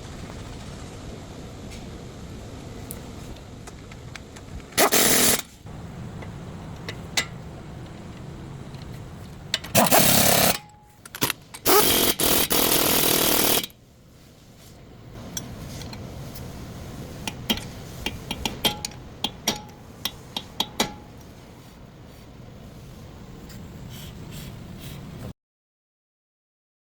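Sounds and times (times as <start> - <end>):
power tool running: 4.8 - 5.4, 9.7 - 10.6, 11.6 - 13.7
tools clanking on metal: 17.5 - 21.2.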